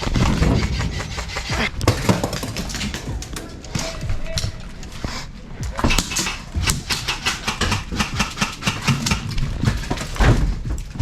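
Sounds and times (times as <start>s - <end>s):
airsoft rifle firing sharp shots: 5.9s - 9.3s.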